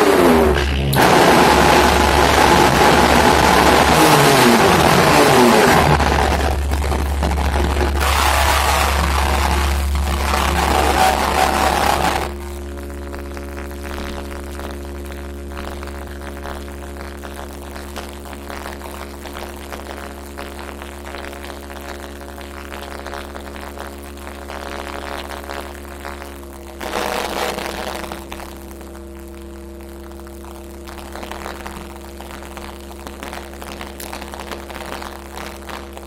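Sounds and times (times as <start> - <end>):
loud noise burst: 0.0 - 14.4, 26.8 - 28.6
electronic drone: 0.0 - 22.3, 23.8 - 36.0
dense crackling haze: 0.0 - 36.0.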